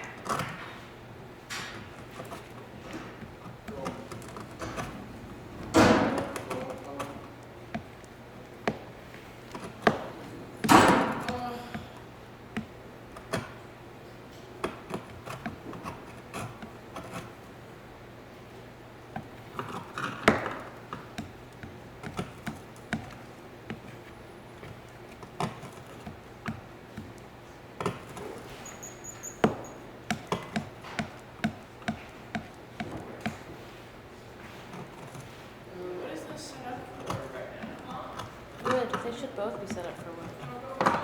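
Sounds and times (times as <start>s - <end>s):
hand tools tapping and scraping: 0.0s - 41.0s
steady low hum: 0.0s - 41.0s
loud knock: 4.2s - 6.6s.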